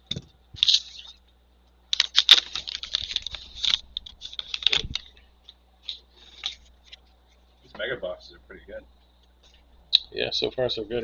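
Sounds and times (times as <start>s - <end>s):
trading cards and packaging handled: 0.6s - 1.2s, 1.9s - 7.5s.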